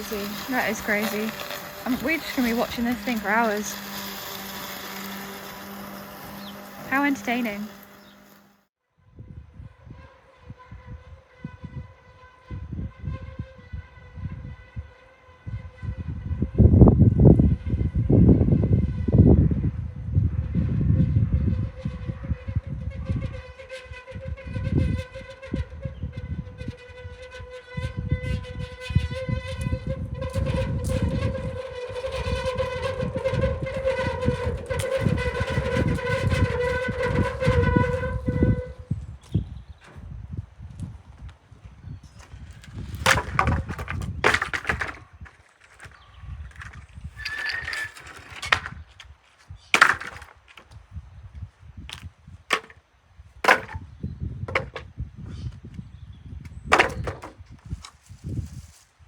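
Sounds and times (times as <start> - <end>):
robotic lawn mower whining: 0.0 - 8.6, 27.7 - 39.4.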